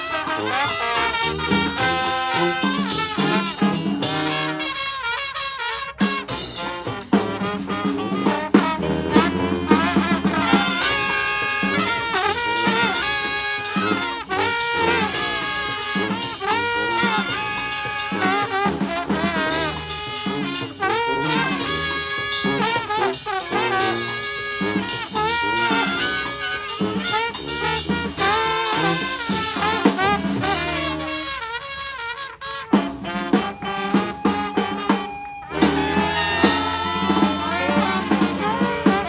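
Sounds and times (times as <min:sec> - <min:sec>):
brass band playing: 0:00.0 - 0:39.0
drum hits: 0:06.1 - 0:31.3, 0:32.8 - 0:39.0.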